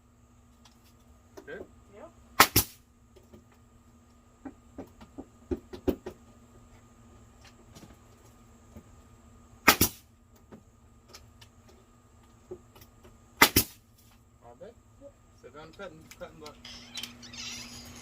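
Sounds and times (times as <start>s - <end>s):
nail gun firing: 2.4s - 2.8s, 9.7s - 10.0s, 13.4s - 13.8s.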